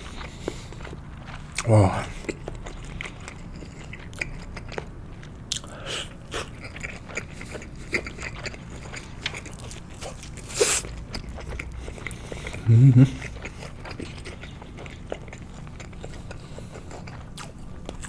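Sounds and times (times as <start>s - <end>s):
soft chewing: 0.0s - 18.0s
noisy mouth sound: 10.0s - 10.9s.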